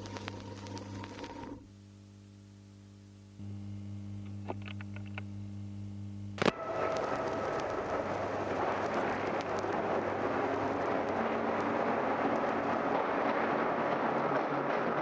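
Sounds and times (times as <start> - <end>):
faint clicks: 4.1 - 5.4.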